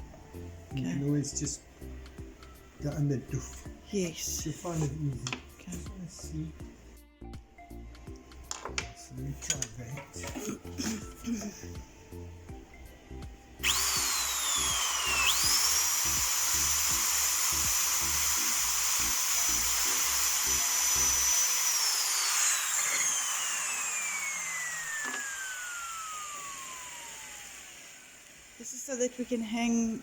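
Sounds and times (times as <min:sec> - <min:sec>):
power drill whining: 0:00.0 - 0:30.0
background music with a beat: 0:05.1 - 0:09.2.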